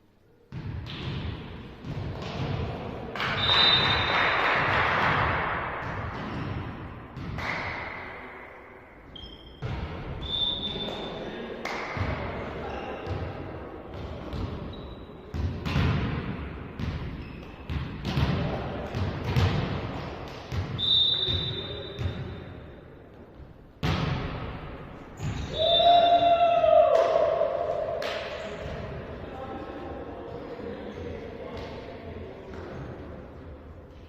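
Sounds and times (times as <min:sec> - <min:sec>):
shoe squeaks: 0:09.1 - 0:11.1, 0:14.7 - 0:15.3, 0:17.2 - 0:17.7
players' voices: 0:10.2 - 0:15.8, 0:25.2 - 0:33.9
volleyball thudding: 0:23.8 - 0:25.5.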